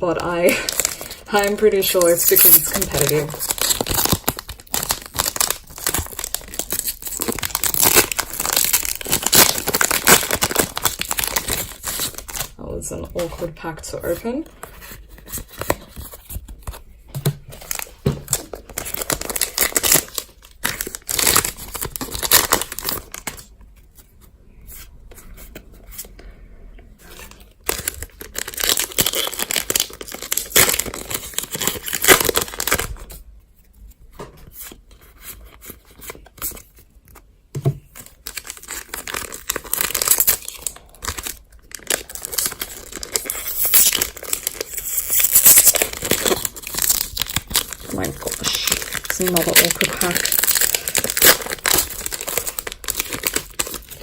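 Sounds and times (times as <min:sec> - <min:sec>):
wrappers crinkling: 0:00.0 - 0:16.8, 0:17.5 - 0:24.1, 0:27.1 - 0:33.2, 0:37.9 - 0:54.0
foil packs tearing: 0:00.1 - 0:12.6, 0:17.6 - 0:23.5, 0:27.2 - 0:33.1, 0:38.1 - 0:54.0.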